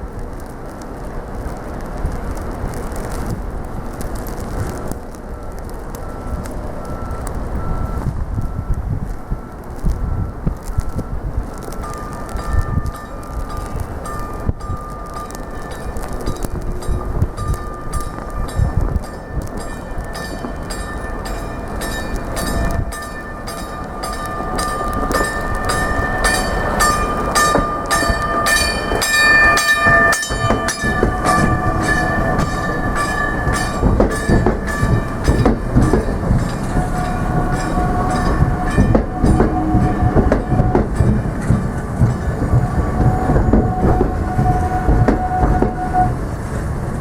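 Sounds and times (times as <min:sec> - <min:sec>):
train rumble with high tones: 0:00.0 - 0:47.0
train wheels clicking over rail joints: 0:00.1 - 0:47.0.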